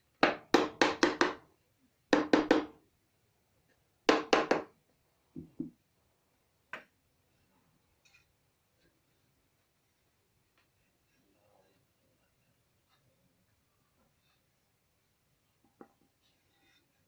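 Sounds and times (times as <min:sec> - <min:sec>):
hammer knocking wood: 0:02.2 - 0:02.7.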